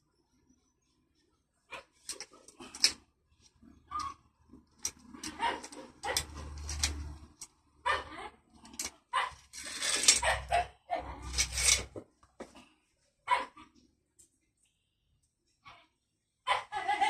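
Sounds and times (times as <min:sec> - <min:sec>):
dog barking: 0:05.3 - 0:06.3, 0:07.8 - 0:08.3, 0:09.1 - 0:09.4, 0:10.2 - 0:11.2, 0:13.3 - 0:13.7, 0:16.5 - 0:16.8.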